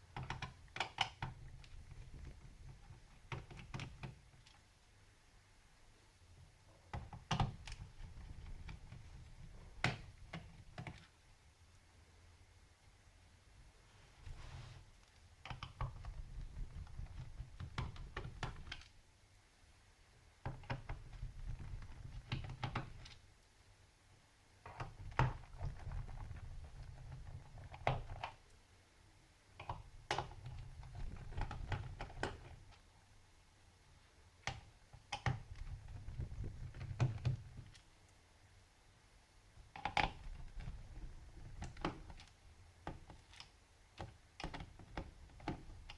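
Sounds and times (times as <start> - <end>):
small clicks and knocks: 0.1 - 4.6, 29.6 - 32.9, 34.4 - 37.9, 39.6 - 45.9.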